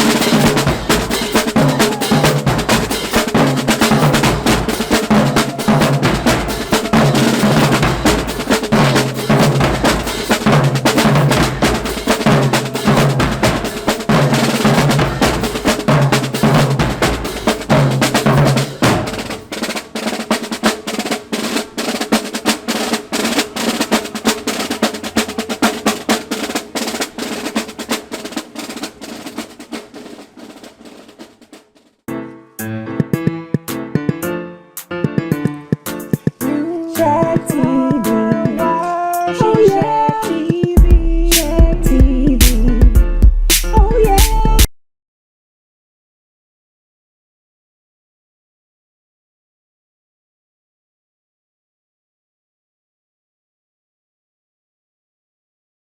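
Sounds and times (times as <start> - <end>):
snare drum strokes: 0.0 - 32.0, 43.5 - 44.4.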